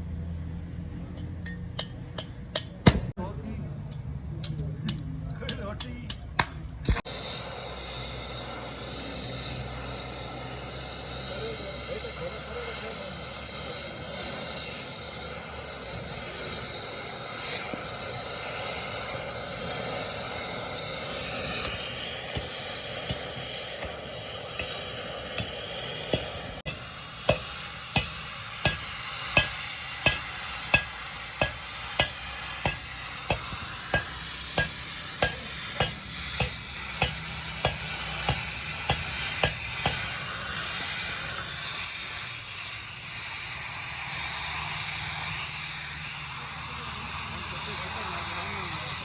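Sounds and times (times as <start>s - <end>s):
sharp metallic ticks: 1.2s - 3.1s, 3.9s - 7.0s, 21.4s - 40.2s
steady sizzling hiss: 7.1s - 49.0s.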